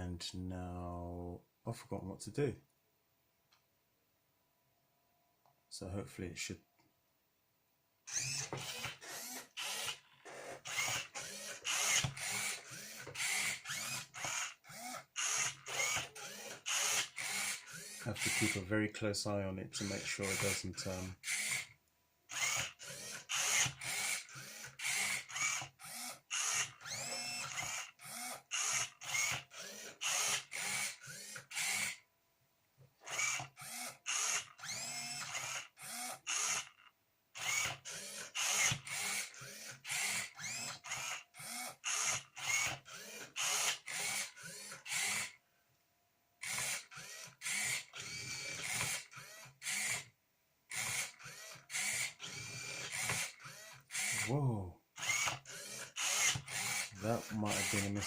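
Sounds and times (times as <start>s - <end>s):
robot motors whirring: 8.1s - 18.7s, 19.8s - 21.7s, 22.3s - 32.0s, 33.0s - 36.8s, 37.4s - 45.4s, 46.4s - 50.1s, 50.7s - 54.4s, 55.0s - 58.0s.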